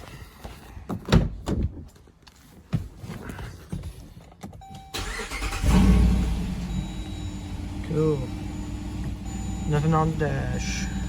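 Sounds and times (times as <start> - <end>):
car engine starting and idling: 4.7 - 11.0.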